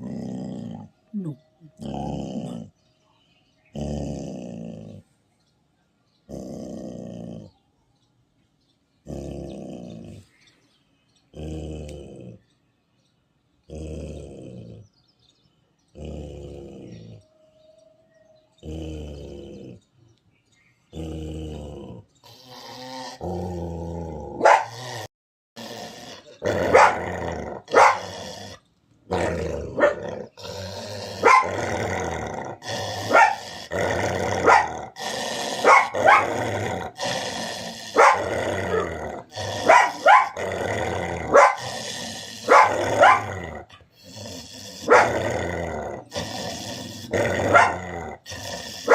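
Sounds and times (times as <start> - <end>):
dog growling: 0.0 - 2.9, 3.6 - 5.1, 6.2 - 7.6, 9.0 - 10.5, 11.3 - 12.5, 13.6 - 17.3, 18.2 - 20.0, 20.9 - 48.9
dog barking: 24.4 - 24.8, 26.7 - 27.0, 27.7 - 28.1, 29.2 - 30.1, 31.2 - 31.6, 33.1 - 33.4, 34.4 - 34.8, 35.6 - 36.4, 38.0 - 38.9, 39.6 - 40.4, 41.3 - 41.6, 42.5 - 43.3, 44.9 - 45.2, 47.5 - 47.9.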